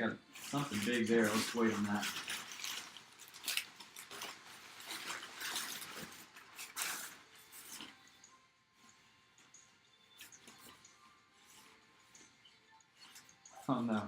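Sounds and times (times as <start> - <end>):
packaging rustling: 0.3 - 8.1.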